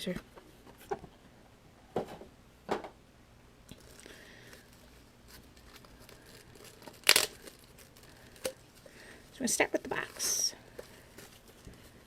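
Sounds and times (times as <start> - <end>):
packaging crackle: 3.7 - 9.0.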